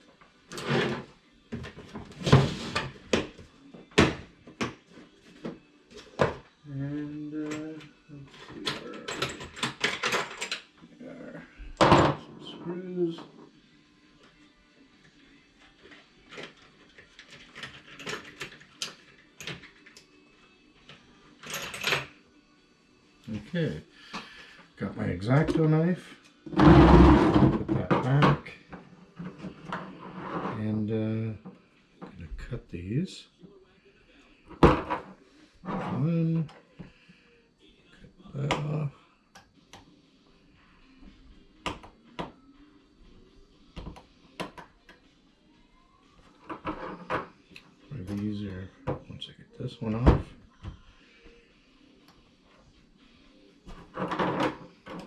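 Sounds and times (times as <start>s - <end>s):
tools clicking and knocking: 8.6s - 10.7s.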